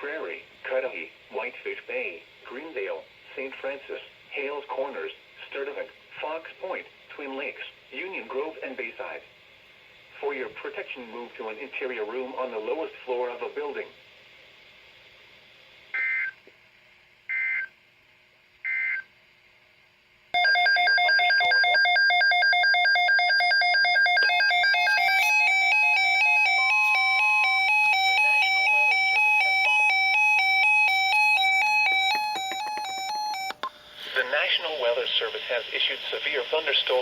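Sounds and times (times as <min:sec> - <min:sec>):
electronic beeping tune: 0:20.4 - 0:33.7.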